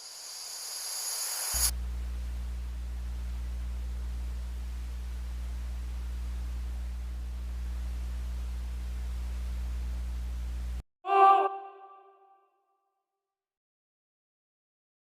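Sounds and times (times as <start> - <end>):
low electric hum: 1.6 - 10.8.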